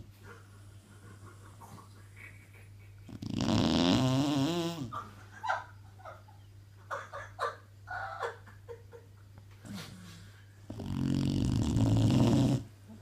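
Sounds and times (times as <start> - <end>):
dog snoring: 3.1 - 4.9, 10.7 - 12.7.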